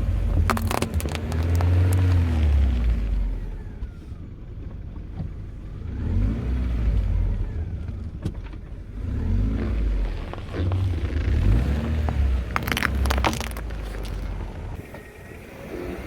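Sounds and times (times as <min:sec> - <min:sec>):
sharp crack: 0:00.4 - 0:02.8, 0:10.6 - 0:14.8
car engine revving: 0:05.8 - 0:16.0.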